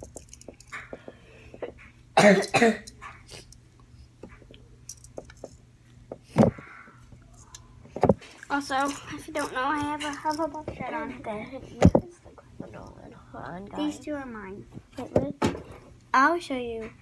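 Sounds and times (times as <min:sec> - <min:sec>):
person coughing: 0:01.6 - 0:03.0
handling clicks and rustles: 0:02.9 - 0:06.6.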